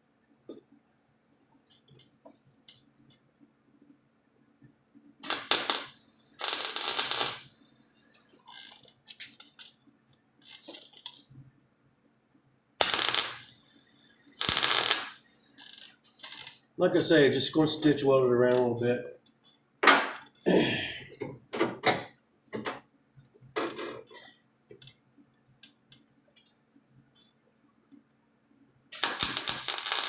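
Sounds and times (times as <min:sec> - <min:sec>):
welding arc crackle: 0:05.2 - 0:09.8, 0:12.8 - 0:16.6, 0:28.9 - 0:30.0.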